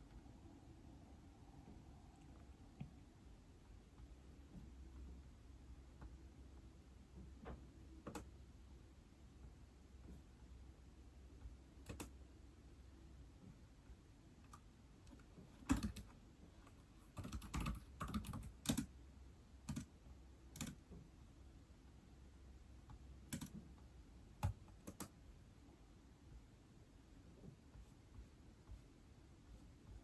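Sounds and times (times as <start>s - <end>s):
keyboard typing: 7.3s - 8.3s, 11.5s - 12.2s, 14.4s - 19.0s, 19.6s - 21.0s, 22.9s - 23.8s, 24.4s - 25.2s.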